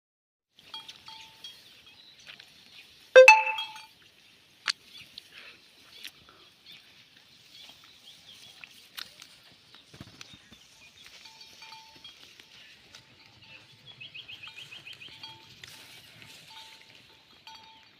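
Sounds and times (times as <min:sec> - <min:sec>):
loud ringing clink: 0:03.2 - 0:03.9.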